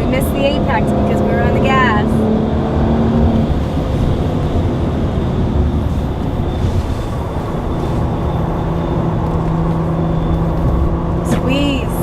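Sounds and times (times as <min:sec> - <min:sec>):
car engine rumble from inside: 0:00.0 - 0:12.0
tyre and road noise: 0:00.0 - 0:12.0.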